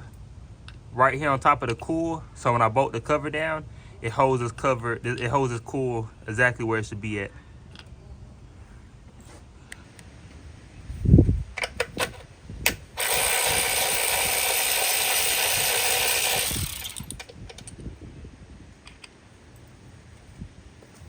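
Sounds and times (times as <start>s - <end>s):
power tool spinning out bolt: 12.7s - 17.8s.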